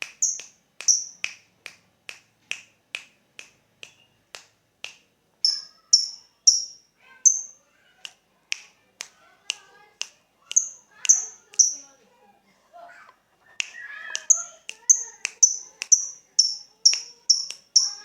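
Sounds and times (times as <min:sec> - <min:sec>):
lovebird ticking call: 0:00.1 - 0:01.3, 0:05.4 - 0:07.5, 0:10.5 - 0:11.9, 0:14.2 - 0:18.0
high bright bird chirps: 0:00.2 - 0:01.2, 0:05.4 - 0:07.7, 0:10.5 - 0:12.0, 0:13.6 - 0:18.0.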